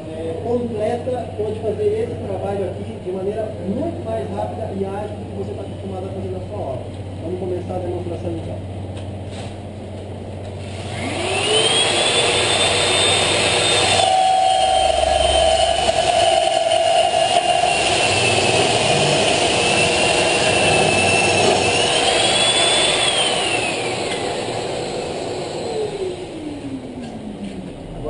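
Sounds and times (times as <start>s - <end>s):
power tool motor cutting brick: 10.6s - 26.4s.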